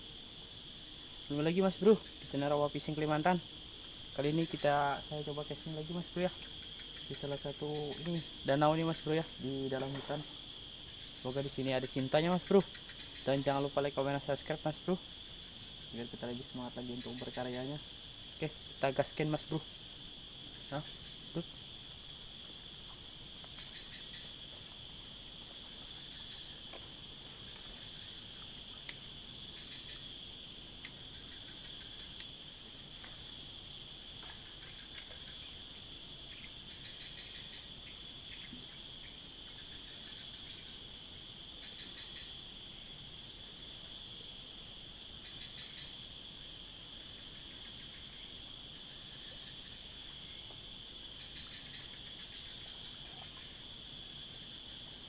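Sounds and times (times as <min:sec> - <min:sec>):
insects droning: 0:00.0 - 0:55.0
pulsed insect chirping: 0:00.0 - 0:55.0
faint clicks: 0:28.8 - 0:29.4, 0:30.8 - 0:31.0.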